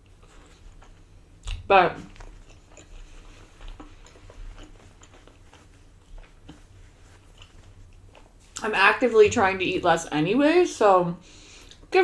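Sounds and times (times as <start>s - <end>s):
person chewing food: 0.0s - 8.6s.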